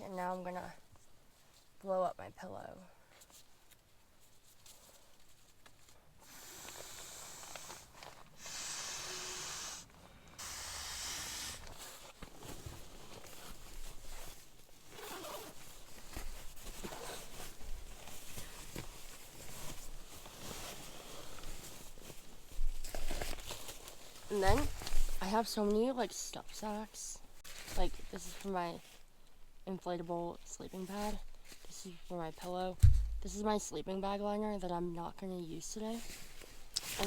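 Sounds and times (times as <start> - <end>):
breathy exhalations into valve: 6.2 - 11.8
rustling of pillow and bedding: 11.6 - 25.9, 35.8 - 37.0.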